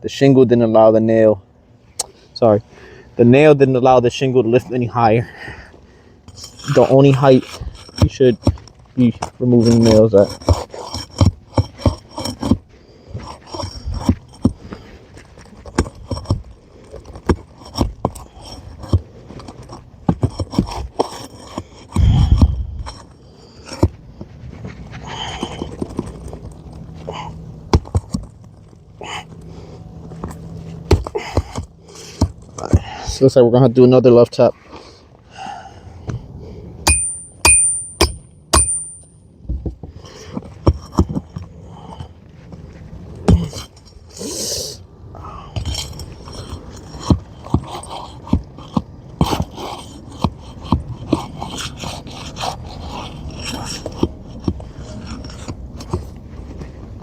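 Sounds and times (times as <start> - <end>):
metal tool clicking on shingles: 15.3 - 23.9, 36.8 - 39.2
hammer tapping metal pry tool: 36.8 - 39.2
sharp metallic clicks and knocks: 36.8 - 41.5.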